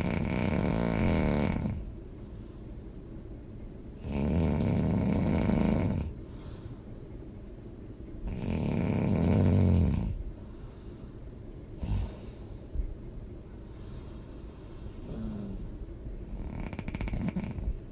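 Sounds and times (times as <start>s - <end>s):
person snoring loudly: 0.0s - 1.8s, 4.0s - 6.1s, 8.3s - 10.2s
quiet breathing: 0.0s - 3.2s, 4.0s - 17.9s.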